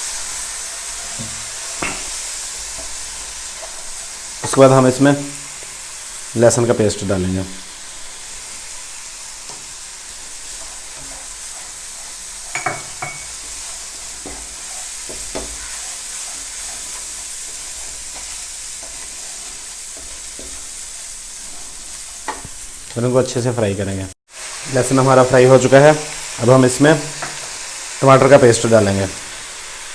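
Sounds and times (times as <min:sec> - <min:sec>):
food sizzling in pan: 0:00.0 - 0:29.9
spoon knocking against pan: 0:01.2 - 0:02.2, 0:12.5 - 0:13.6, 0:14.2 - 0:15.6.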